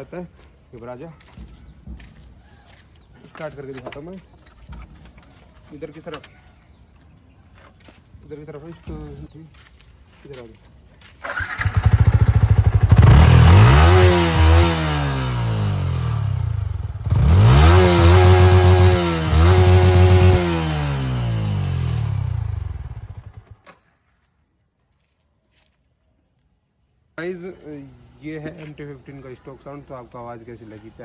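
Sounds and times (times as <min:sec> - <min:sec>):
motorcycle engine revving: 0:11.2 - 0:23.6.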